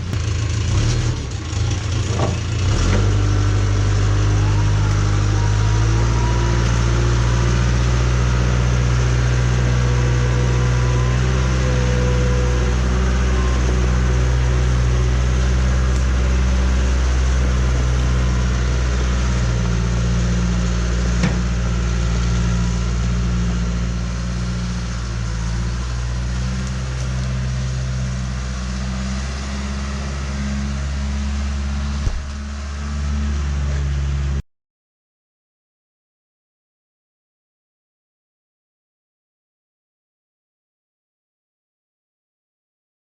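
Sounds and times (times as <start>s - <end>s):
backhoe diesel engine running: 0.0s - 34.4s.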